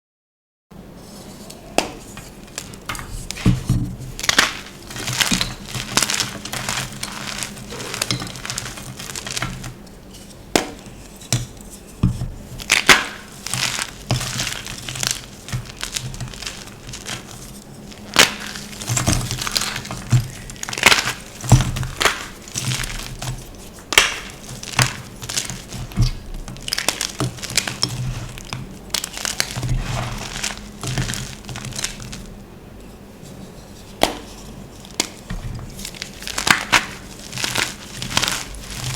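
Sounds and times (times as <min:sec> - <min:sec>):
chalk crunching and crackling: 0:01.0 - 0:32.4, 0:33.2 - 0:38.9.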